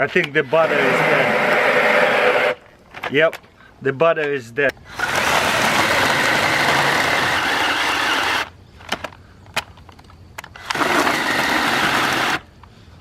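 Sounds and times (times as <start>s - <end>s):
electric chainsaw cutting a branch: 0.6s - 2.6s, 4.9s - 8.5s, 10.6s - 12.5s.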